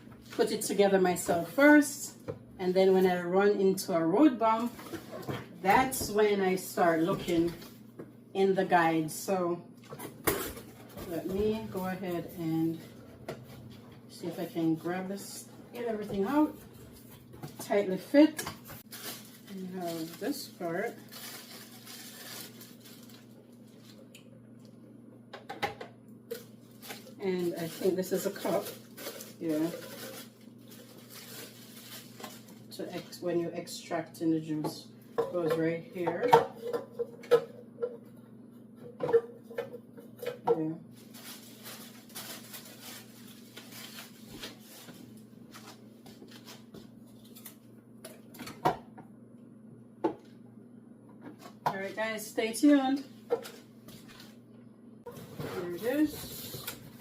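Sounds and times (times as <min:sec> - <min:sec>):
packaging rustling: 0:18.7 - 0:24.0, 0:26.3 - 0:32.7, 0:41.0 - 0:46.6.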